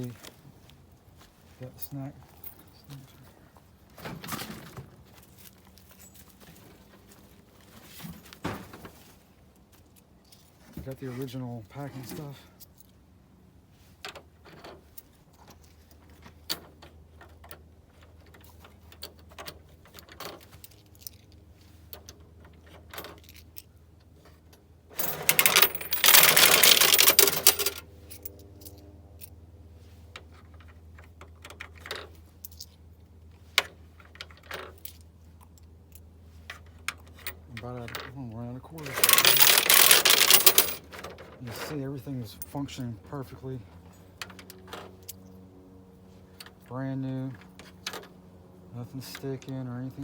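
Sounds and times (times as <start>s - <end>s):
loud rustling: 38.8s - 40.8s.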